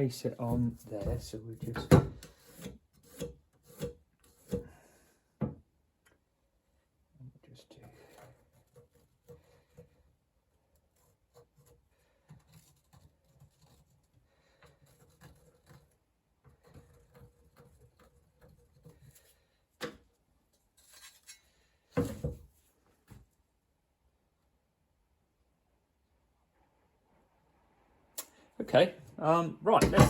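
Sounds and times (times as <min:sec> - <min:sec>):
knocks on workbench: 0:29.8 - 0:30.0.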